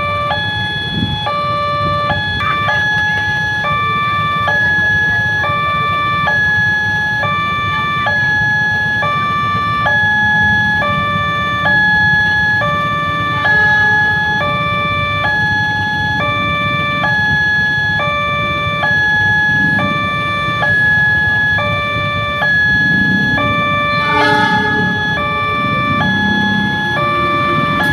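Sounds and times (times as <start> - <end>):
level crossing two-tone alarm: 0.0 - 27.9.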